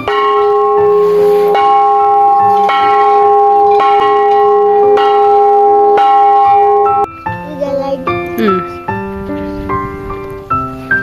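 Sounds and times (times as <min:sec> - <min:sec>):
sustained bell-like tones: 0:00.0 - 0:07.1.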